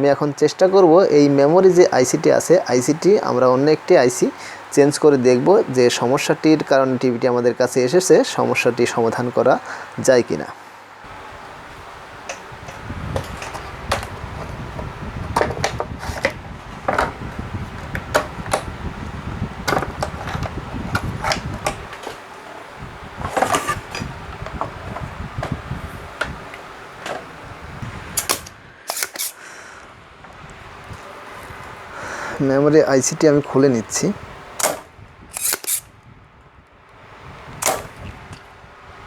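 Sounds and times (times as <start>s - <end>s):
hand tools clicking and tapping: 28.2s - 29.4s, 35.4s - 35.8s.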